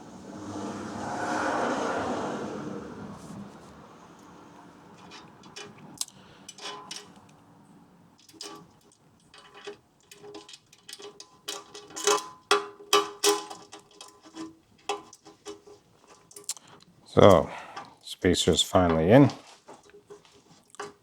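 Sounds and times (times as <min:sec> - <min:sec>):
metal tools clicking and clinking: 0:04.8 - 0:07.5, 0:08.2 - 0:17.9, 0:18.7 - 0:21.0.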